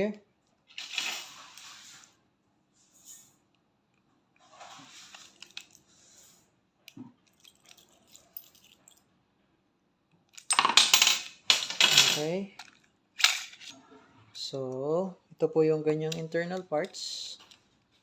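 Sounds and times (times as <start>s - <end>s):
clicks and scraping of metal parts: 4.4s - 5.9s.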